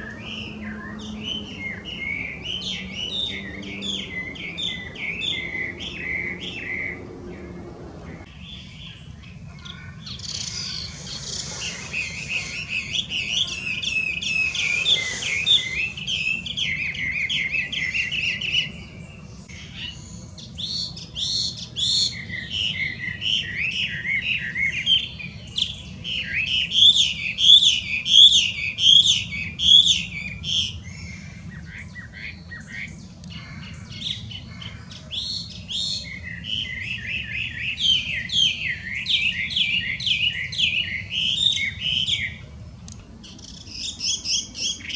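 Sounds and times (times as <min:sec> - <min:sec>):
songbird whistling: 0:00.0 - 0:09.0, 0:10.1 - 0:18.8.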